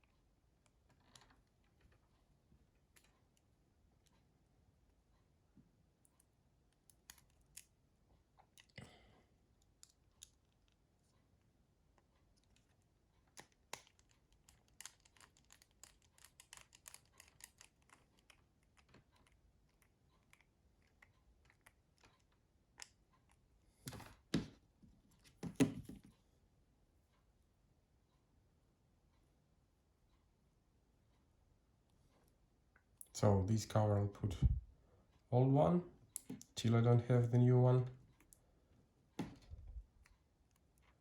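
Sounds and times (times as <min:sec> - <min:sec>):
small tools and plastic parts clicking: 0:00.6 - 0:03.4, 0:06.0 - 0:07.8, 0:09.6 - 0:11.2, 0:12.0 - 0:24.0.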